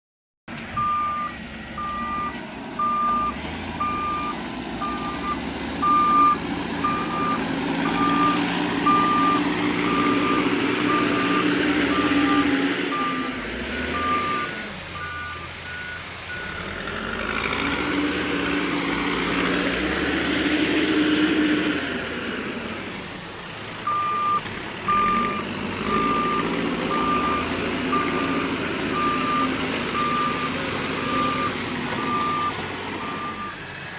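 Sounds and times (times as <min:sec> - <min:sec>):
backhoe diesel engine: 0:00.5 - 0:33.9
reversing alarm beeping: 0:00.8 - 0:16.6, 0:23.8 - 0:33.6.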